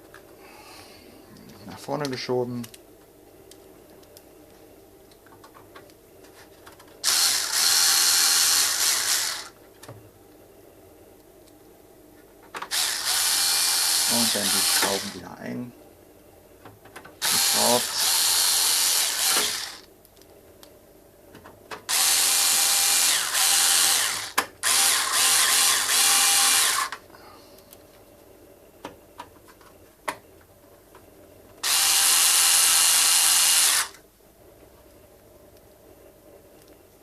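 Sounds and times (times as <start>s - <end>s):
cordless screwdriver driving screws: 7.0s - 9.5s, 12.7s - 15.2s, 17.2s - 19.8s, 21.9s - 26.9s, 31.6s - 34.0s.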